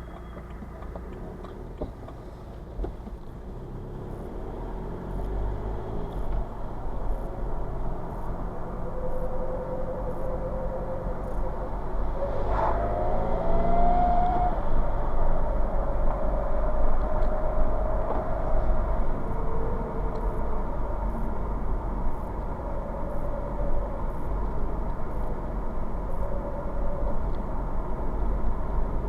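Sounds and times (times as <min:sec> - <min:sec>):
diesel car rumbling: 0:00.0 - 0:29.0
thin wavering whine: 0:06.8 - 0:28.4.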